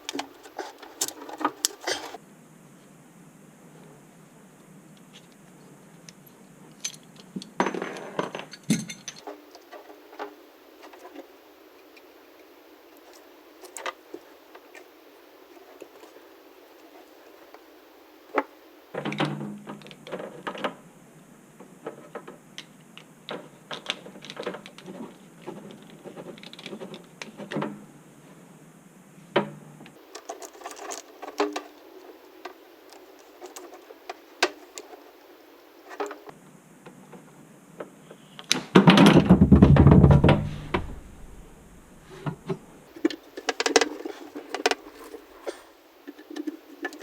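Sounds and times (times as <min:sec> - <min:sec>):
tools and parts rattling: 0:00.0 - 0:02.2, 0:30.0 - 0:35.2, 0:35.8 - 0:36.3, 0:42.3 - 0:47.0.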